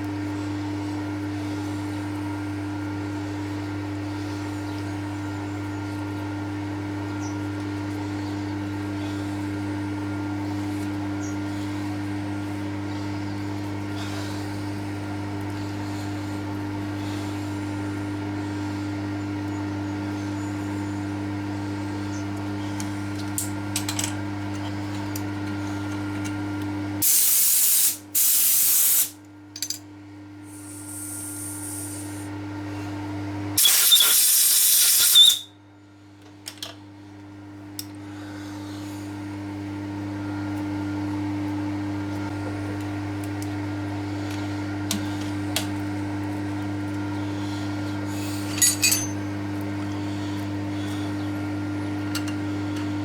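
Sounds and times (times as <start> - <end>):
workshop machine hum: 0.0 - 53.0
loud hissing blasts: 27.0 - 29.2, 33.6 - 35.3.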